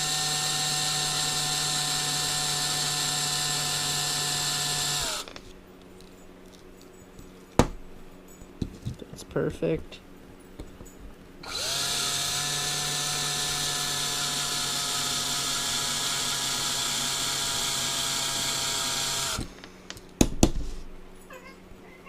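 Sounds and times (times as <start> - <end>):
electric drill whine: 0.0 - 5.4, 11.4 - 19.6.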